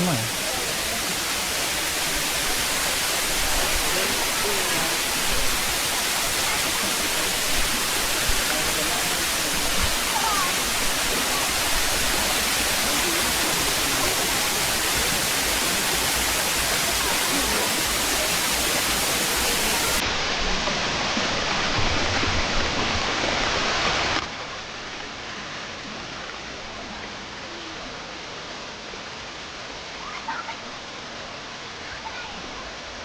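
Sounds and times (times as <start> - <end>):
waterfall rushing: 0.0 - 24.6.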